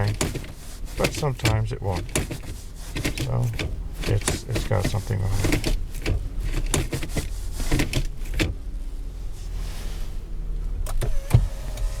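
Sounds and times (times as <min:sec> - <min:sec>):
knocks and clicks: 0:00.0 - 0:08.6
car cabin low hum: 0:00.0 - 0:12.0.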